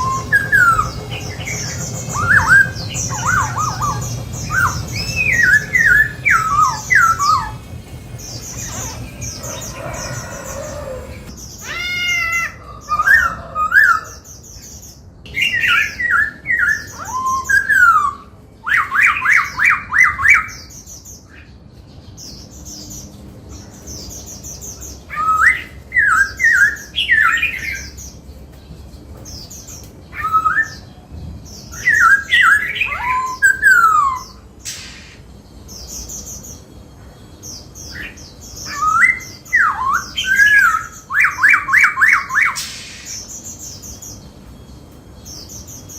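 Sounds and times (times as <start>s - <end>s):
bird singing whistled phrases: 15.3s - 20.7s, 31.7s - 35.2s, 37.9s - 43.3s.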